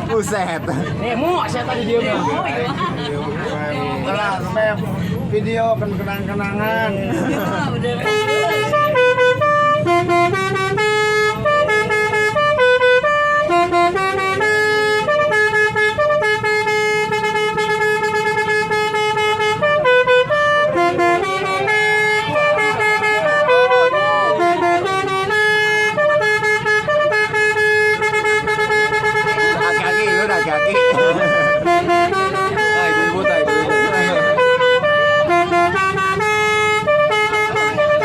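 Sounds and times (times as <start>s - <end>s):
multi-tone horn playing a tune: 8.0s - 38.0s.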